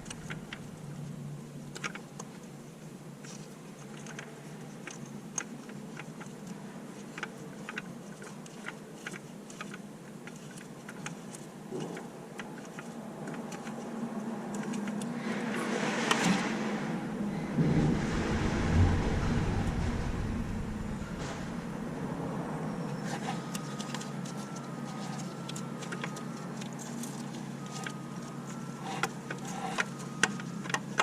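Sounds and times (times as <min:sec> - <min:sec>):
steady low hum: 0:00.0 - 0:01.7, 0:16.6 - 0:23.1
rustling noise: 0:15.4 - 0:23.2.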